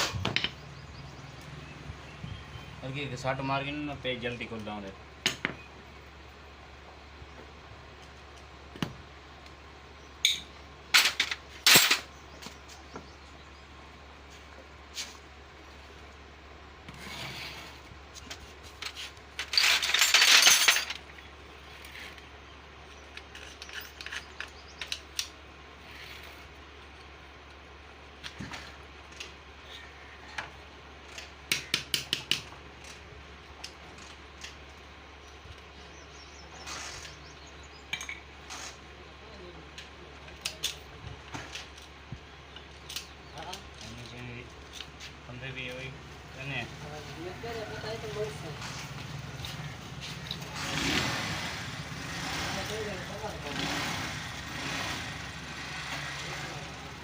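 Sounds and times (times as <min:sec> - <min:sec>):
metal tools clicking and knocking: 0:10.2 - 0:12.1
metal tools clinking: 0:10.2 - 0:12.1, 0:18.8 - 0:21.1, 0:23.1 - 0:25.0.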